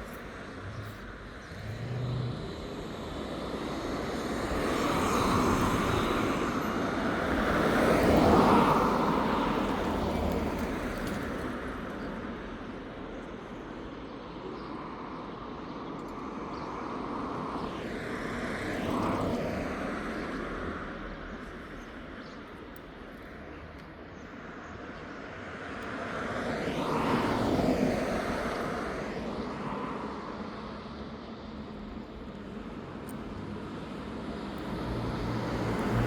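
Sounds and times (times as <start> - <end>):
vehicles passing by: 0.0 - 14.4, 16.6 - 36.0
hum of distant traffic: 0.0 - 36.0.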